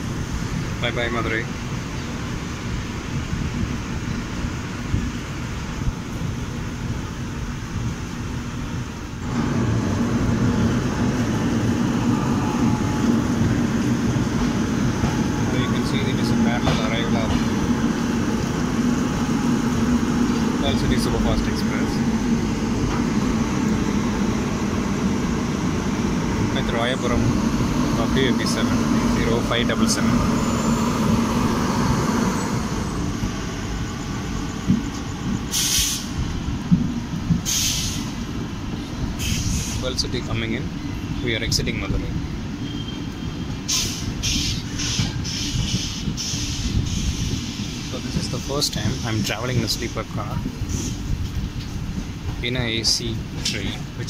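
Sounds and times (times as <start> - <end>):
train rolling on rails: 0.0 - 54.0
short bursts of hiss: 35.5 - 36.1, 37.5 - 38.1.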